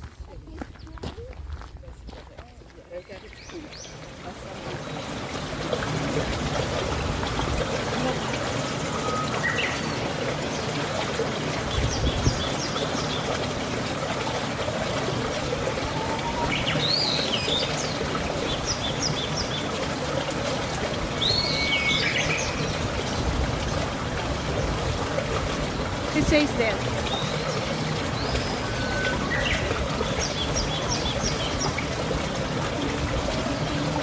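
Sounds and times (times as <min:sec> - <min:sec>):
small birds chirping: 0:00.2 - 0:05.1, 0:15.9 - 0:19.8, 0:27.0 - 0:32.0.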